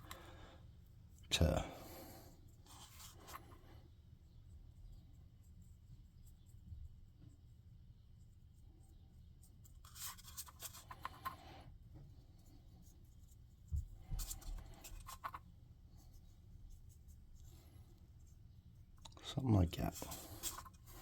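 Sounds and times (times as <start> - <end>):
paintbrush scratchy brushing: 19.8 - 21.0.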